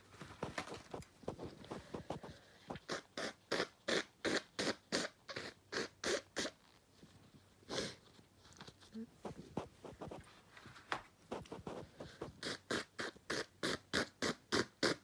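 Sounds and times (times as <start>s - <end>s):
woman sniffing: 1.3s - 6.2s.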